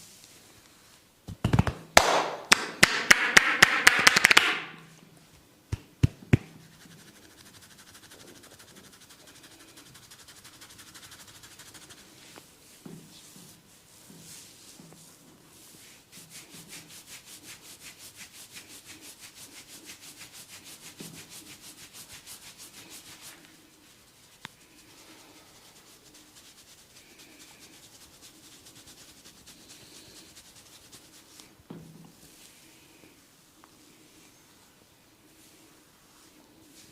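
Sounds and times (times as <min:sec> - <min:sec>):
hands scratching hair on scalp: 0:05.7 - 0:12.4, 0:15.6 - 0:31.6.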